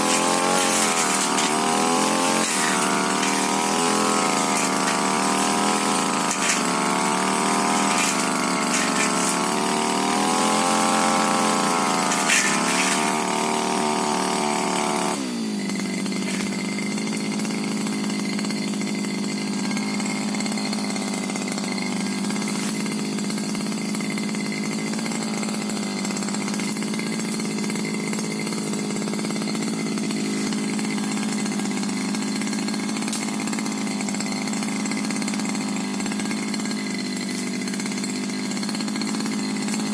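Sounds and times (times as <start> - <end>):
brush cutter engine running: 0.0 - 39.9.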